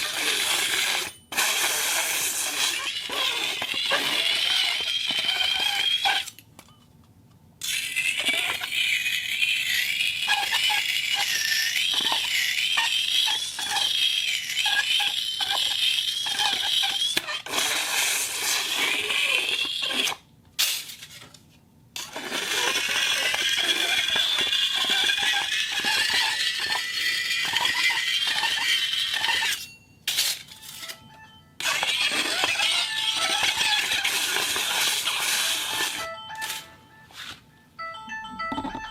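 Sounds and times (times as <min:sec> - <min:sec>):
high metallic squeal: 0:07.7 - 0:17.4, 0:22.6 - 0:37.4.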